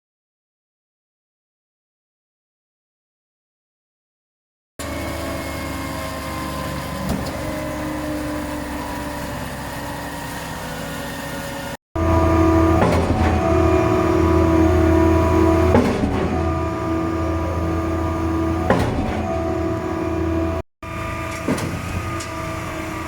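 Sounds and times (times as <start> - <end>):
truck engine hum: 4.8 - 23.0
knocks: 15.7 - 16.5, 18.7 - 19.3.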